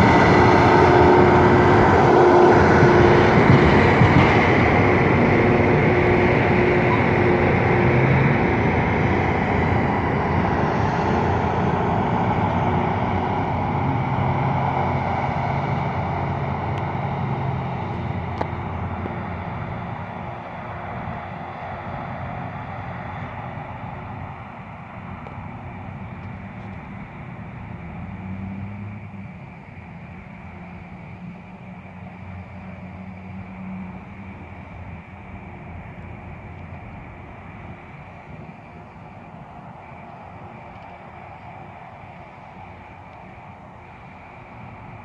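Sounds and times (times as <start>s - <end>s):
wide rushing noise: 0.0s - 25.2s
rail grinder engine drone: 0.0s - 45.0s.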